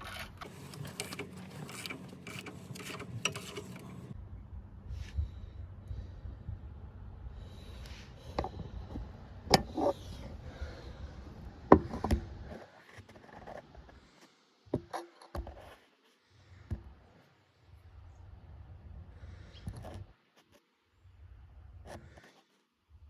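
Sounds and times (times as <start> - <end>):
low rumble: 4.2 - 7.8.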